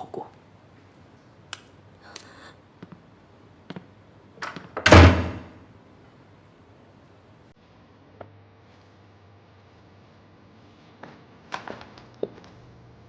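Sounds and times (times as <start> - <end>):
door slamming: 4.4 - 5.6.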